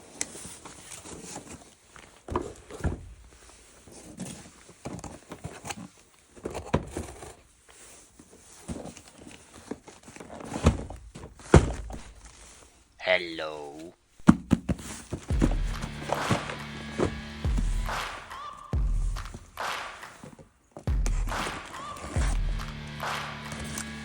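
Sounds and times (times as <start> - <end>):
handling plastic toy and packaging: 0.0 - 12.9
sharp knocks: 15.3 - 20.0, 20.9 - 23.2.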